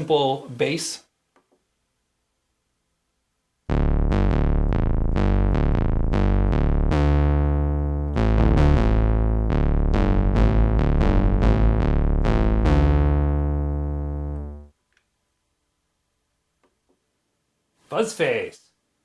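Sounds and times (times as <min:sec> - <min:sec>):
plucky synth bass notes: 0:03.7 - 0:14.7.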